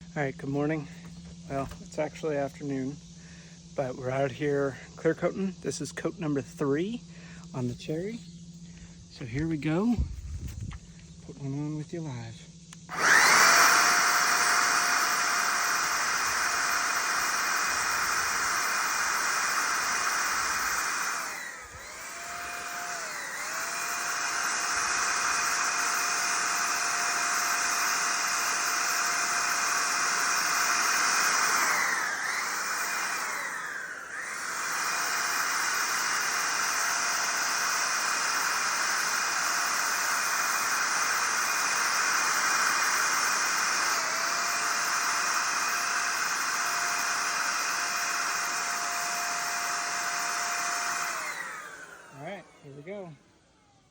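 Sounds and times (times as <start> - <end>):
motor-like whine: 0.0 - 53.9
spray gun air rush: 13.0 - 48.7.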